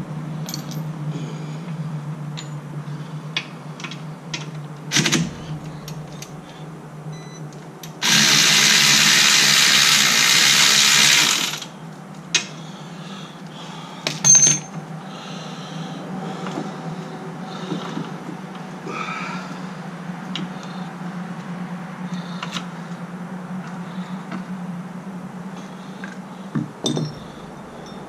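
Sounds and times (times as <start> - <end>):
steady low hum: 0.0 - 28.0
metal knocks and clinks: 0.4 - 0.9, 14.1 - 14.8, 26.6 - 28.0.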